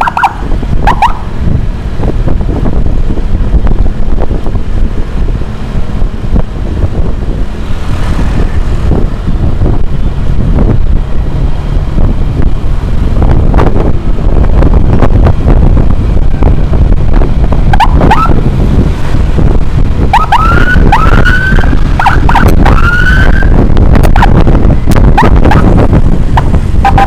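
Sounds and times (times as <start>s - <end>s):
emergency siren whooping: 0.0s - 1.3s, 17.7s - 18.5s, 20.0s - 25.8s, 26.4s - 27.0s
wind and road rumble of motorcycle: 0.0s - 27.0s.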